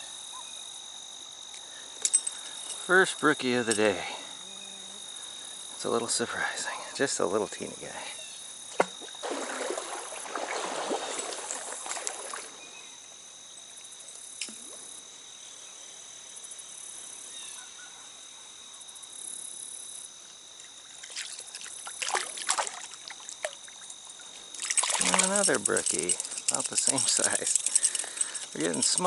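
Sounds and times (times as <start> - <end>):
stream trickling: 8.7 - 13.0, 20.6 - 29.0.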